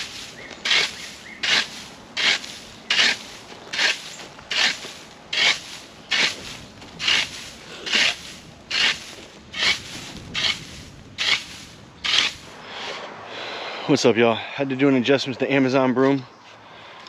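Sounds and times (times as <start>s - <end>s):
branch broom sweeping leaves: 0.0s - 13.0s.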